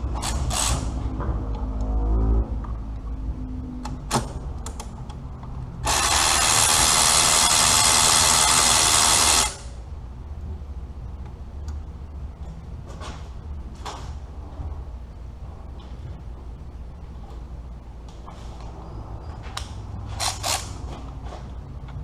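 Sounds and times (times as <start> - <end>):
power tool running: 5.8 - 9.7.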